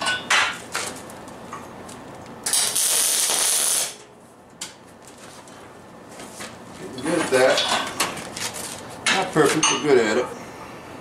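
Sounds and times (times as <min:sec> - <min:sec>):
welder hissing: 0:02.5 - 0:04.0.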